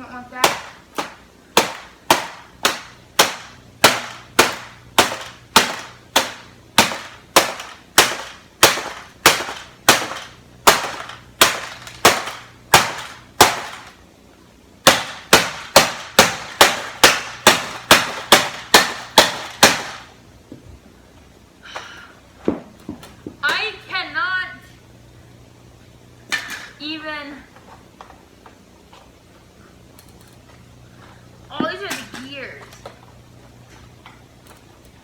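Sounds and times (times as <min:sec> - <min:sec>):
sharp blows on a printer: 0:00.4 - 0:14.0, 0:14.8 - 0:20.2.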